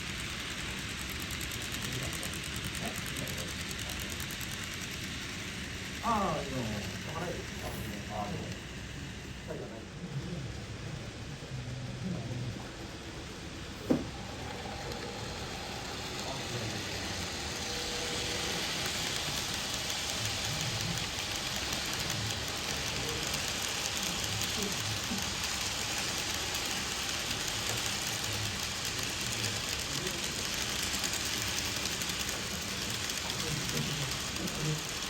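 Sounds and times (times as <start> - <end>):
model train rolling on track: 0.0 - 35.0.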